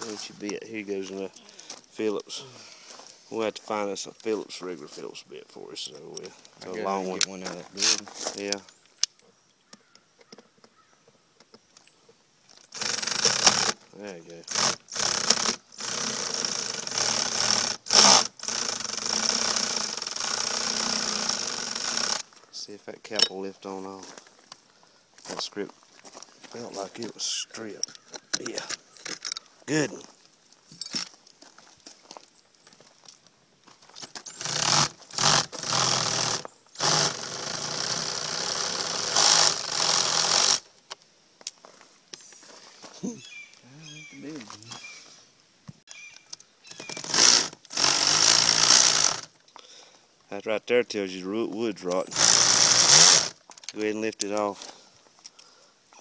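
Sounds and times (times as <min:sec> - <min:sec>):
power drill running: 0:12.7 - 0:13.8, 0:14.4 - 0:22.3, 0:34.3 - 0:40.6, 0:46.8 - 0:49.3, 0:52.0 - 0:53.4.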